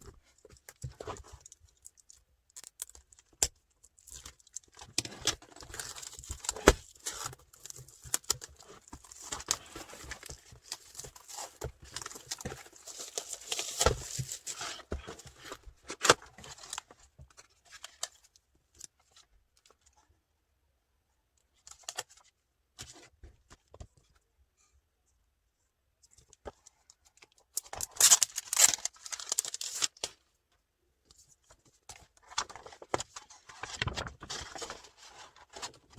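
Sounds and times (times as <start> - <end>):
packaging rustling and crinkling: 4.1 - 16.8, 27.6 - 30.1, 32.3 - 35.8.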